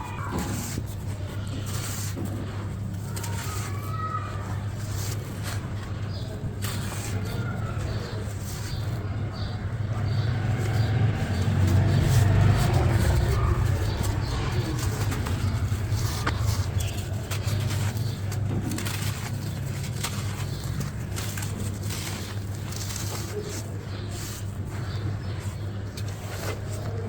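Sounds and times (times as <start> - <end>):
steady low hum: 5.2 - 22.9
brittle block crumbling crackles: 10.3 - 24.9.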